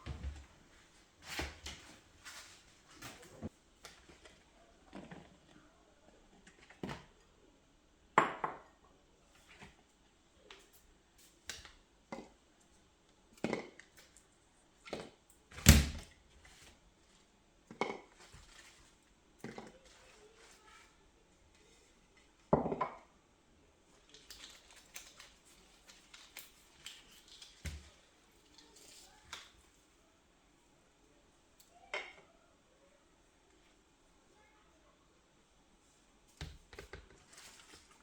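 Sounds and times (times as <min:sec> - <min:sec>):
items knocking on a counter: 0:22.6 - 0:23.0.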